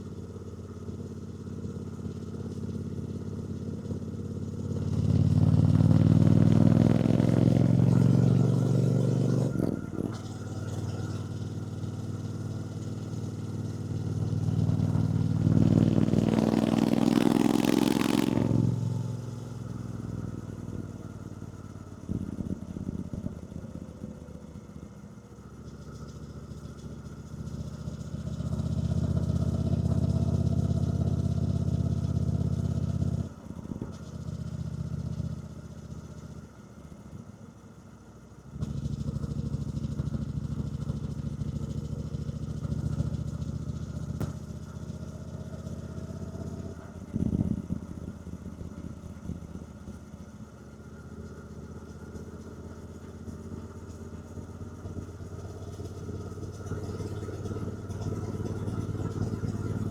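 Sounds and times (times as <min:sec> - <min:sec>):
motorcycle engine revving: 0:00.6 - 0:21.4, 0:38.6 - 0:59.9.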